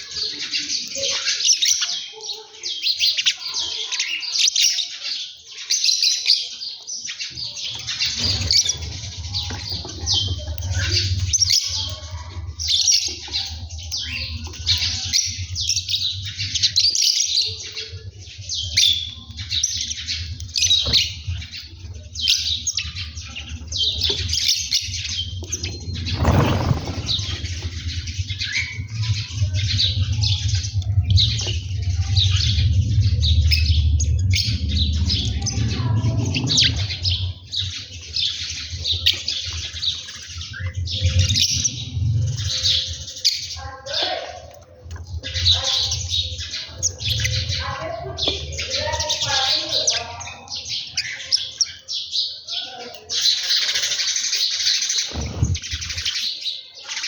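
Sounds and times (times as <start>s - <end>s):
flock of small birds chirping: 0.0s - 57.0s
low rumble: 8.0s - 43.6s.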